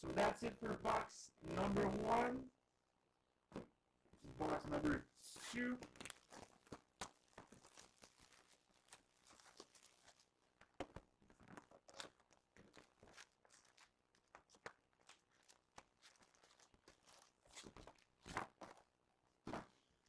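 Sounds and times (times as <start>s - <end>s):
packaging rustling and crinkling: 5.4s - 20.0s.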